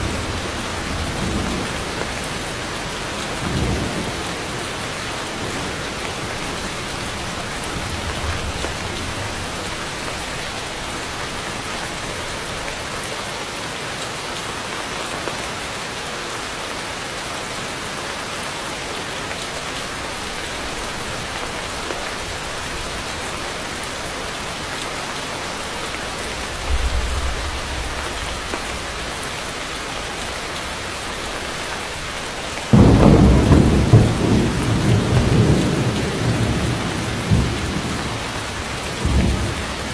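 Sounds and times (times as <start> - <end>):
thunder rumbling: 0.0 - 12.4, 26.3 - 29.2, 32.7 - 39.9
heavy rain falling: 0.0 - 39.9
loud thunderclap: 32.7 - 39.9.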